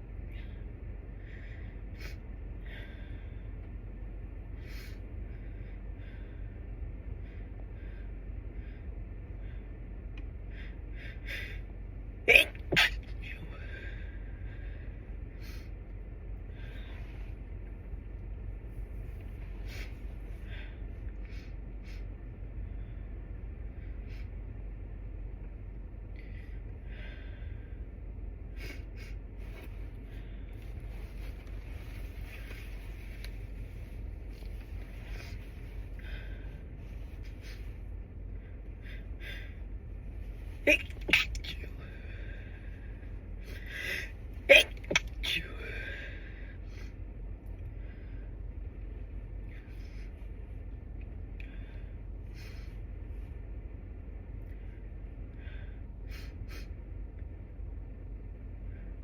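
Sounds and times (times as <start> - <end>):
low background hum: 0.0 - 59.0
stifled sneezes through nose: 12.3 - 13.3, 40.6 - 41.7, 44.4 - 45.7
person gasping for breath: 40.7 - 46.6.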